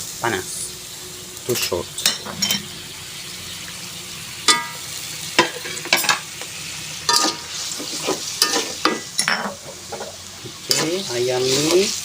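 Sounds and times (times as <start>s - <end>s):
sauce sizzling in a pan: 0.0s - 12.0s
spatula scraping a pan: 7.1s - 11.9s.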